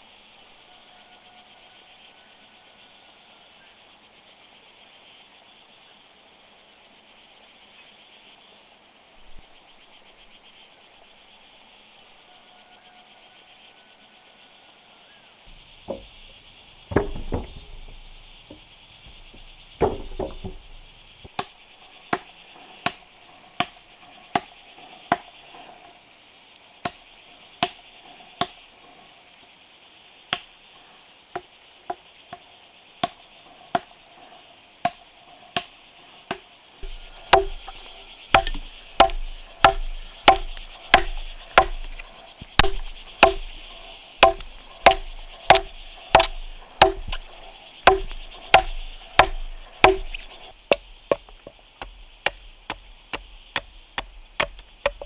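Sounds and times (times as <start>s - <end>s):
steady high hiss: 0.0s - 55.0s
heavy thuds: 15.5s - 21.0s, 36.8s - 55.0s
sharp tool strikes: 36.8s - 51.3s.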